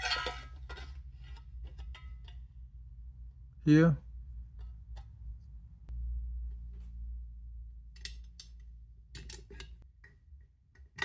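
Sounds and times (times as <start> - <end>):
low rumble: 2.6 - 8.0.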